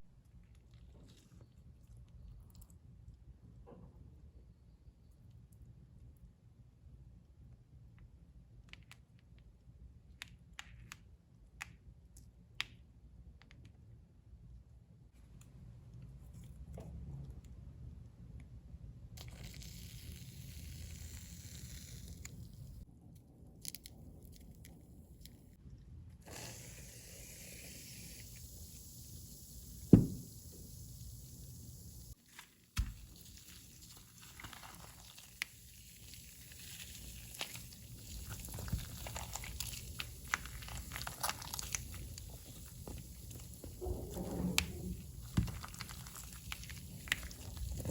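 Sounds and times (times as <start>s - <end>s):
crackly sizzling hiss: 26.7s - 47.9s
slime being squished by hand: 36.0s - 43.4s.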